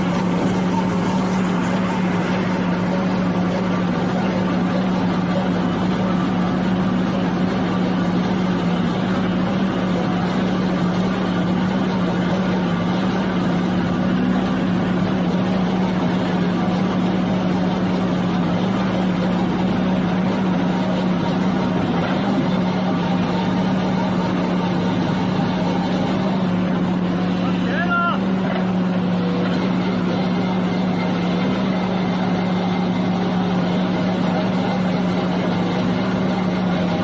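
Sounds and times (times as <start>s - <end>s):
drum cutter grinding: 0.0s - 27.4s
machine hum with low tone: 0.0s - 37.0s.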